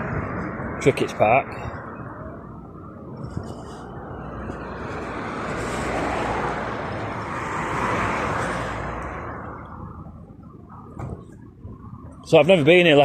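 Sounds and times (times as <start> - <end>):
road vehicle passing: 0.0 - 13.0.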